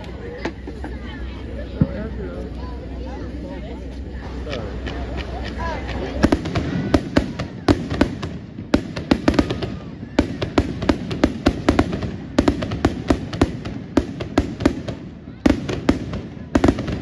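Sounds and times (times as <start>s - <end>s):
fireworks cracking and popping: 4.1s - 17.0s.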